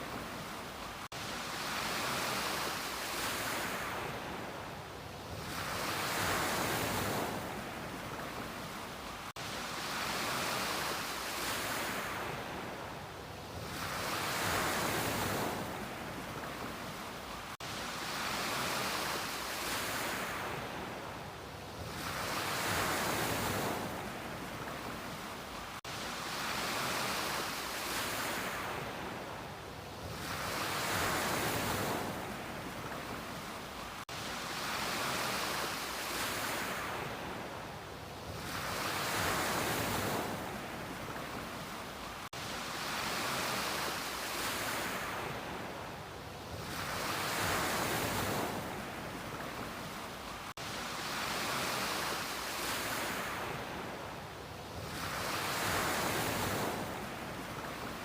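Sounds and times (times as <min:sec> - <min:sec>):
ocean surf breaking: 0:13.6 - 0:21.2, 0:21.8 - 0:37.6, 0:38.4 - 0:54.2.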